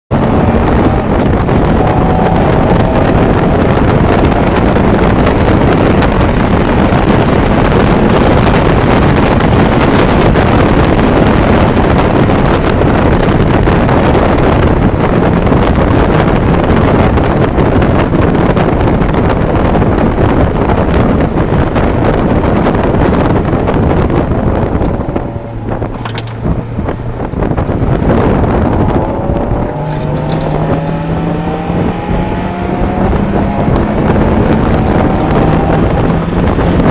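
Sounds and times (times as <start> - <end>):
car engine running: 0.1 - 36.9
wind rushing on microphone: 0.1 - 36.9.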